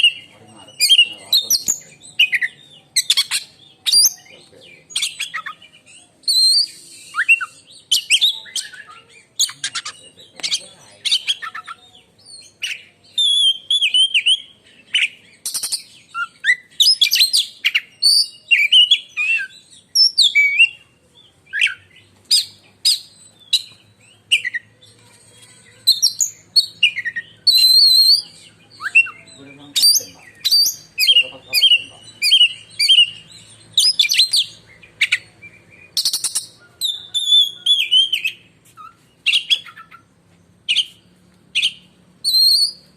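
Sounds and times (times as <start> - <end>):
bird singing shrill whistles: 6.3 - 8.7, 41.6 - 42.9.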